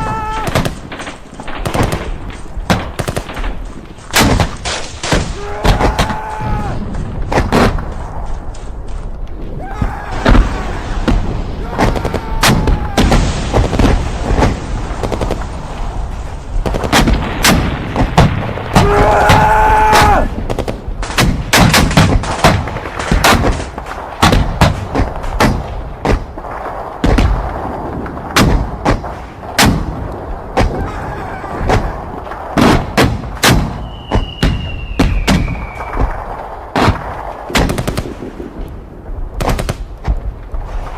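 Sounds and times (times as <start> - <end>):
rifle and machine-gun fire: 0.4 - 6.0, 10.4 - 18.8, 20.4 - 30.4, 31.6 - 38.6
men shouting: 5.3 - 6.8, 11.6 - 13.2, 18.8 - 20.3, 30.7 - 32.2.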